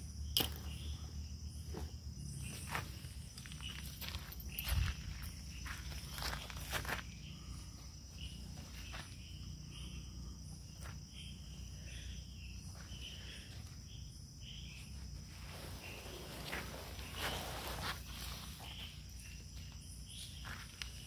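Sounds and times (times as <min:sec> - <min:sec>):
insects chirring: 0:00.0 - 0:21.0
rustling footsteps: 0:01.8 - 0:09.4, 0:14.8 - 0:21.0.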